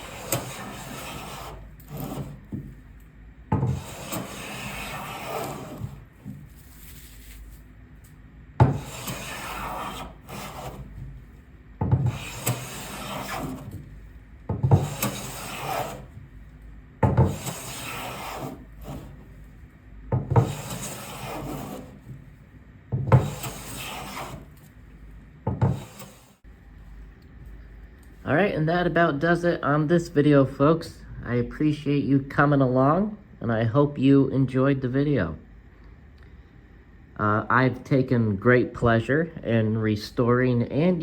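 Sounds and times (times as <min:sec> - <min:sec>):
hand plane blade hissing on wood: 0:00.0 - 0:02.4, 0:03.7 - 0:06.0, 0:08.7 - 0:10.9, 0:12.1 - 0:13.7, 0:14.8 - 0:16.1, 0:17.3 - 0:19.2, 0:20.4 - 0:22.0, 0:23.2 - 0:24.5, 0:25.7 - 0:26.4.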